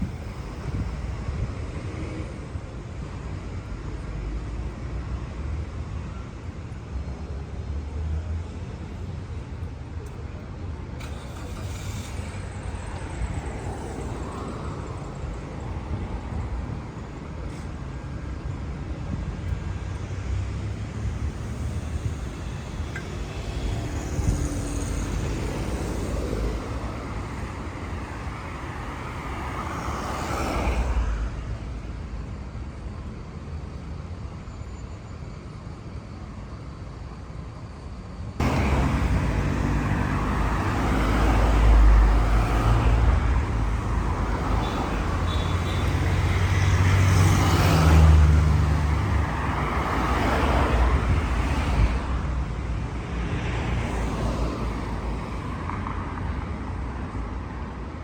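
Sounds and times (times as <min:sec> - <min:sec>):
traffic rumble: 0:00.0 - 0:58.0
cars passing close by: 0:11.0 - 0:32.5, 0:38.4 - 0:58.0.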